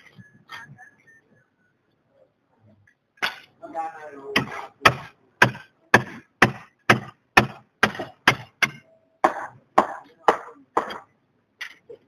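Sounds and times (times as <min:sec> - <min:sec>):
hammer driving nails: 0:04.4 - 0:08.8.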